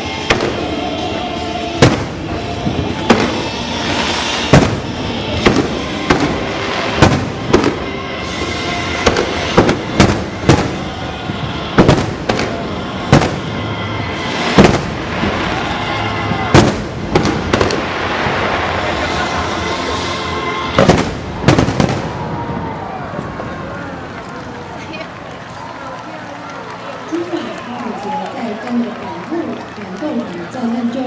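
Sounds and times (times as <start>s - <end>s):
fireworks bangs: 0.0s - 24.4s.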